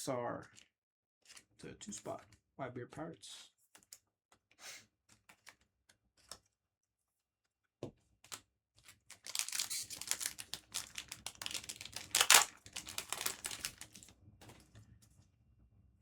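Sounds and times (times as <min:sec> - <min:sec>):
foil pack crinkling and tearing: 0:08.9 - 0:14.1.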